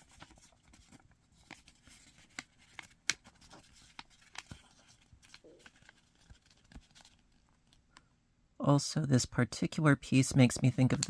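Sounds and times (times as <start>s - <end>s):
paper being folded and creased: 0.0s - 7.8s.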